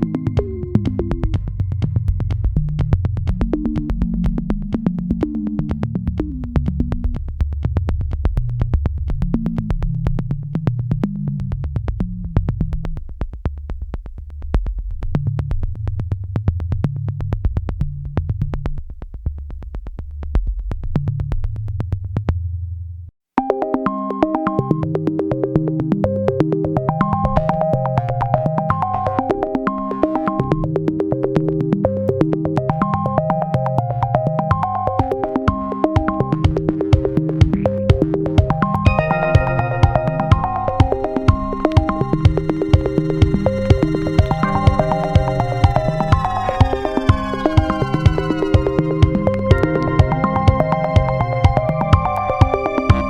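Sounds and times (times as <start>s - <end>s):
steady ticking beat: 0.0s - 19.7s, 30.2s - 53.0s
keyboard melody: 23.4s - 25.2s, 38.8s - 53.0s
synthesizer bass line: 34.6s - 53.0s.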